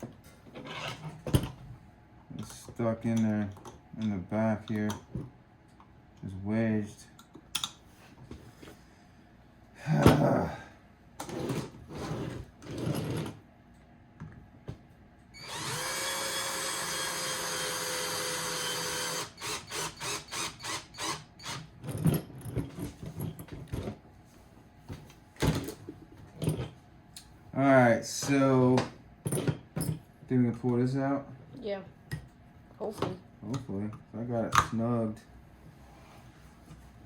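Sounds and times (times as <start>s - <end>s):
cordless power screwdriver running: 15.4s - 21.6s.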